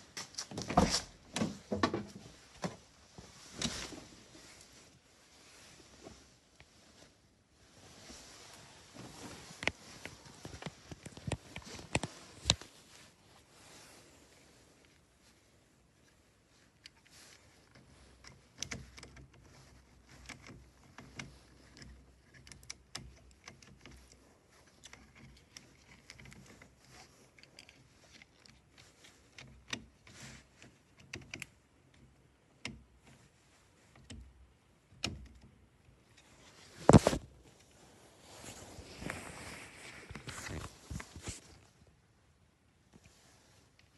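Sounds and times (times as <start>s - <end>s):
plastic clicks and rattles: 16.8s - 33.2s.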